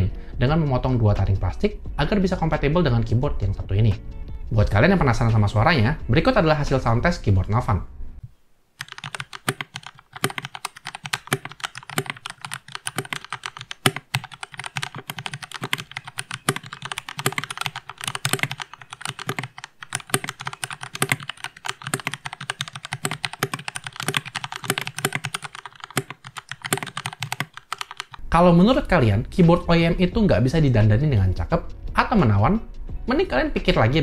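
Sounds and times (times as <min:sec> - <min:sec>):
mechanical keyboard typing clatter: 0:08.8 - 0:28.2.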